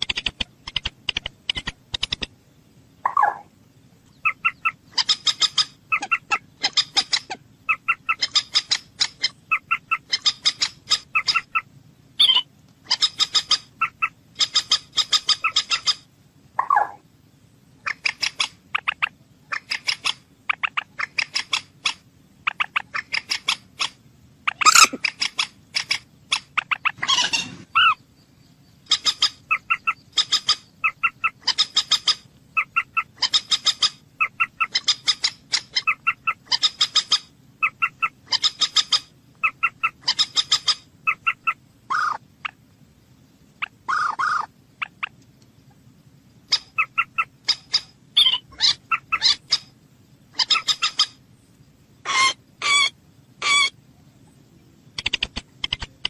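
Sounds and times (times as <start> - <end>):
moorhen rapid clicking calls: 0.0 - 2.4, 3.0 - 3.5, 4.1 - 17.0, 17.8 - 28.0, 28.8 - 42.6, 43.6 - 45.5, 46.4 - 49.7, 50.3 - 51.2, 54.9 - 56.0
moorhen low single calls: 3.0 - 3.5.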